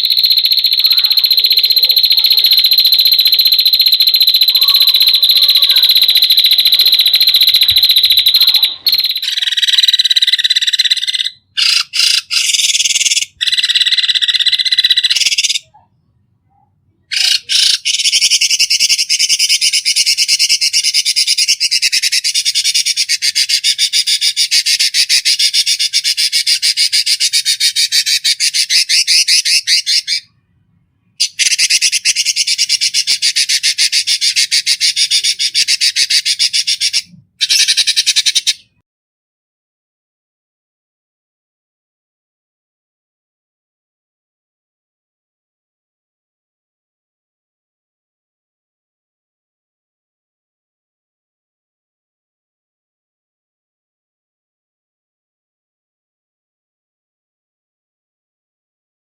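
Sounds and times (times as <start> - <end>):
fast pulsing trill: 0.0 - 9.6
shrill buzzing animal calls: 0.0 - 15.7, 31.2 - 38.7.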